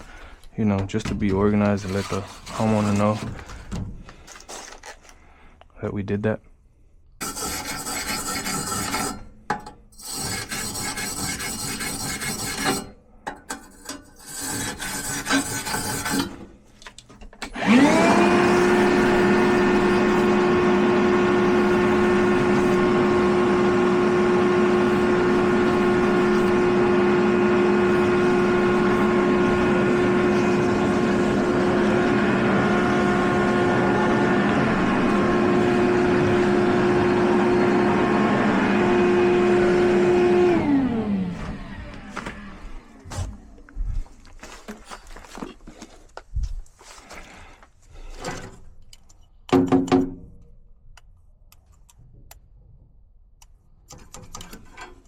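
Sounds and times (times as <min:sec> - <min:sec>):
scraping and rubbing: 0:01.2 - 0:05.2, 0:07.2 - 0:09.2, 0:10.0 - 0:12.9, 0:13.5 - 0:17.0
electric motor whine and hum: 0:17.5 - 0:44.1.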